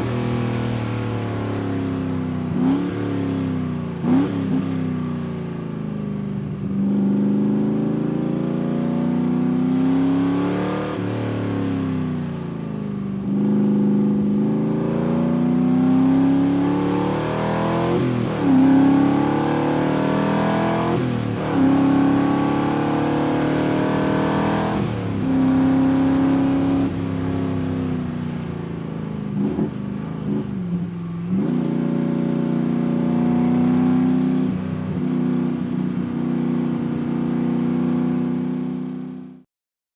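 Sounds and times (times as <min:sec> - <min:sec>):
car engine through gears: 0:00.0 - 0:05.2, 0:13.2 - 0:27.9, 0:29.3 - 0:39.1.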